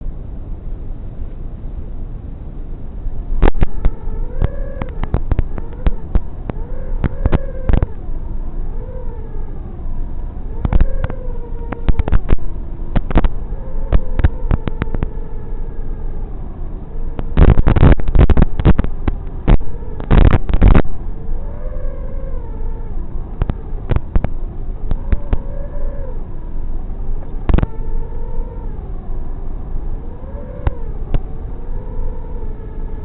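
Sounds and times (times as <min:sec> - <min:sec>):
loud rough bursts of noise: 0:03.0 - 0:33.0
quadcopter motors whining: 0:03.1 - 0:33.0
sharp crackles and clicks: 0:03.2 - 0:09.4, 0:10.4 - 0:15.9, 0:16.9 - 0:26.2, 0:27.0 - 0:28.3, 0:30.5 - 0:31.4.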